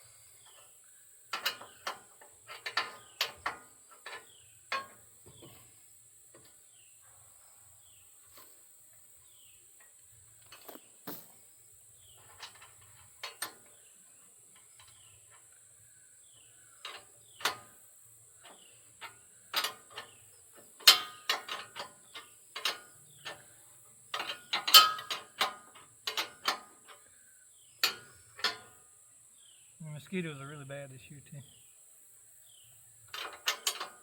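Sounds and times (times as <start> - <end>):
metallic clicks of hand tools: 1.3 - 5.0, 16.8 - 17.7, 18.4 - 23.5, 24.1 - 27.0, 27.8 - 28.8, 33.1 - 34.0.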